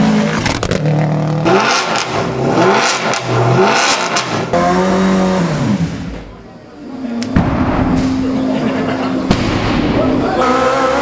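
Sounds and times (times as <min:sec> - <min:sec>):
car engine revving: 0:00.0 - 0:11.0
exhaust pops and crackles: 0:00.2 - 0:04.6.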